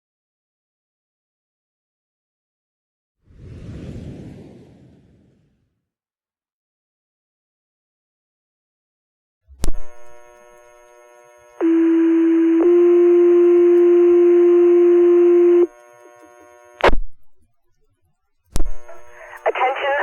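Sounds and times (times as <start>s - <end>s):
radio transmitter click: 9.6s - 14.3s, 15.1s - 17.0s, 18.6s - 20.0s.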